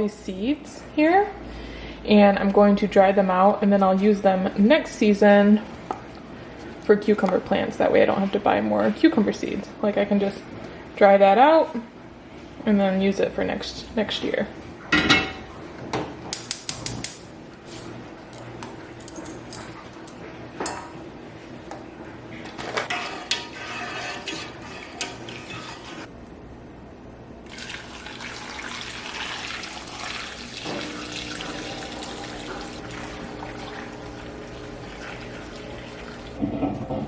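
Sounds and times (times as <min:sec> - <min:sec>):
utensils and dishes clinking: 0:18.4 - 0:21.0.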